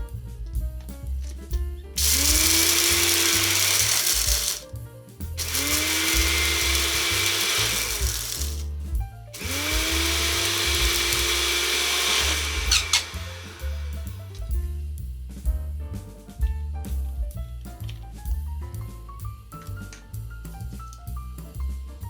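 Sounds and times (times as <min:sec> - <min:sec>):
background music: 0:00.0 - 0:22.0
blender motor whirring: 0:02.0 - 0:04.6, 0:05.4 - 0:08.7, 0:09.4 - 0:14.3.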